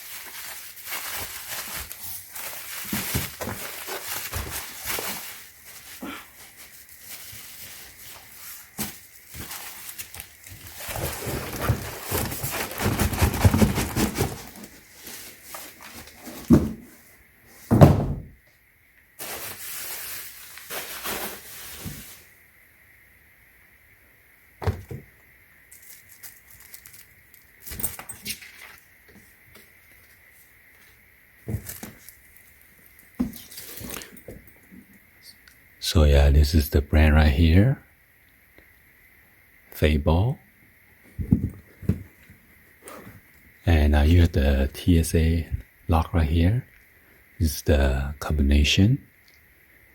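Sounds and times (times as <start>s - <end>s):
suitcase rustling: 7.2s - 16.9s
suitcase knocks and thumps: 17.7s - 18.4s, 24.6s - 25.0s.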